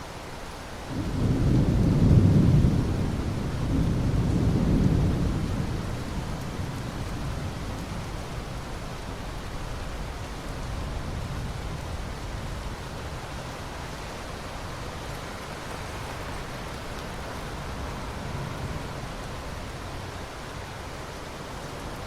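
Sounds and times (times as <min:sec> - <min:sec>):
thunder rumble: 0:00.9 - 0:13.2.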